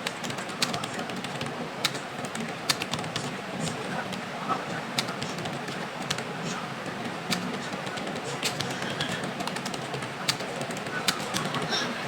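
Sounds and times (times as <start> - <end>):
keyboard keys clicking: 0.0 - 4.2, 7.0 - 11.8
background hiss and murmur: 0.0 - 12.0.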